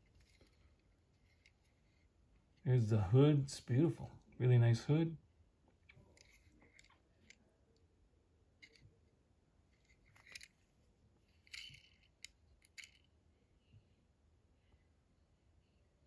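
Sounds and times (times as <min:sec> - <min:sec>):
toy car clicking and tapping: 0:09.8 - 0:10.5, 0:11.4 - 0:13.1.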